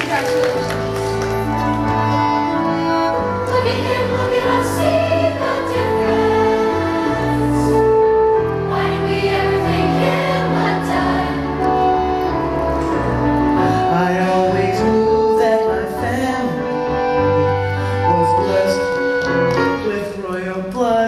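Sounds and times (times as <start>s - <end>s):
instrumental accompaniment: 0.0s - 20.9s
group of voices singing: 3.2s - 12.0s.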